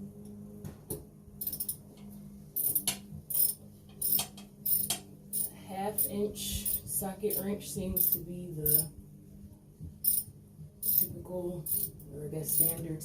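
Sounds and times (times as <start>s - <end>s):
ratchet wrench clicking: 1.4s - 1.8s, 2.6s - 7.4s, 8.0s - 8.9s, 10.0s - 11.1s, 11.7s - 11.9s.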